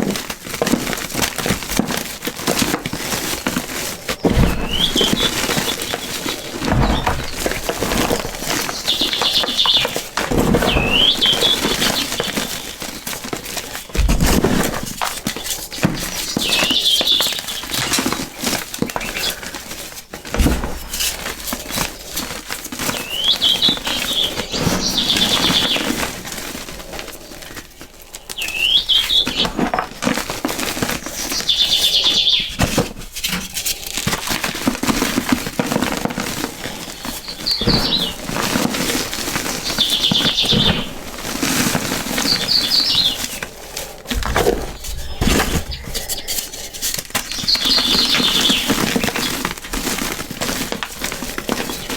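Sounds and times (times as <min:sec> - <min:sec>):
crumbly block crunching by hand: 0:00.0 - 0:51.9
bird call with rising chirps: 0:10.6 - 0:12.4, 0:28.4 - 0:29.6, 0:31.1 - 0:32.6, 0:37.2 - 0:38.2.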